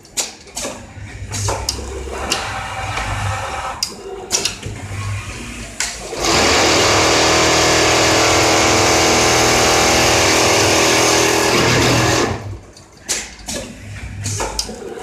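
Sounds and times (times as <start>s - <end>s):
sewing machine stitching: 6.0s - 12.6s.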